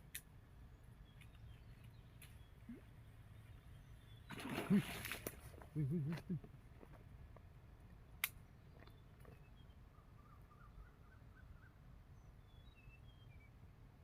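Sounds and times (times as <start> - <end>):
bird chirps: 8.6 - 13.6.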